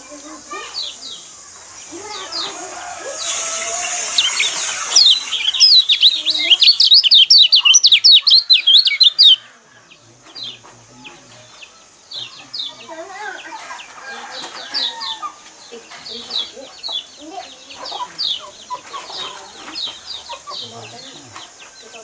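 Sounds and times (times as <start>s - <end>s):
harsh rasping bird call: 0.0s - 9.6s
bird chirping rapidly: 0.0s - 10.6s, 14.6s - 22.0s.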